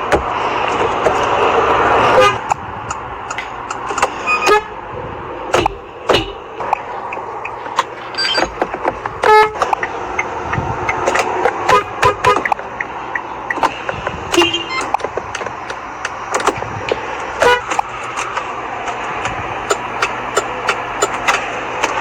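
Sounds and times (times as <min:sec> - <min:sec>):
steady noise: 0:00.0 - 0:22.0
car horns honking: 0:01.8 - 0:18.4
scattered clicks: 0:02.4 - 0:04.5, 0:06.6 - 0:22.0.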